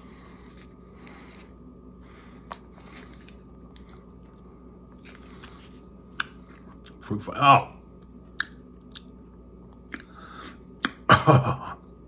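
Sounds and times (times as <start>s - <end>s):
low room hum: 0.0s - 12.0s
wet mouth sounds eating candy: 9.8s - 11.1s.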